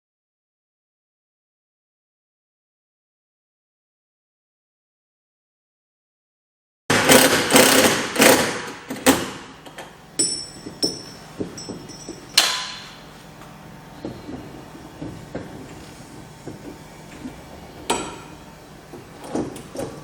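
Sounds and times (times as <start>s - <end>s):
bicycle bell ringing: 10.2s - 12.9s.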